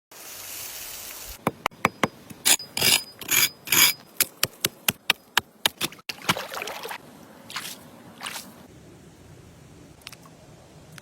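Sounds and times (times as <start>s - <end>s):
steady hiss: 0.1s - 1.4s.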